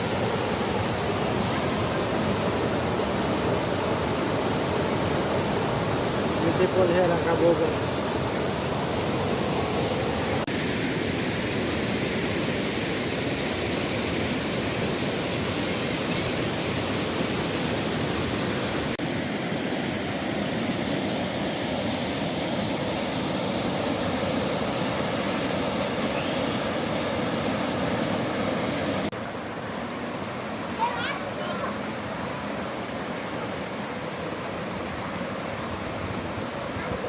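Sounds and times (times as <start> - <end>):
water rushing and falling: 0.0 - 37.0.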